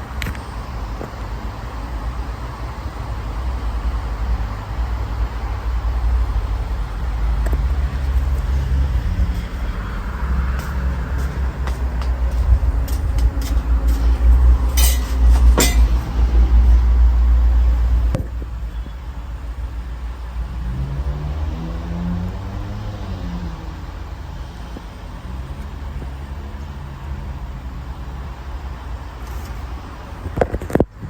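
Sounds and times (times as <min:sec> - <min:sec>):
sharp metallic clinks: 0:14.7 - 0:16.2.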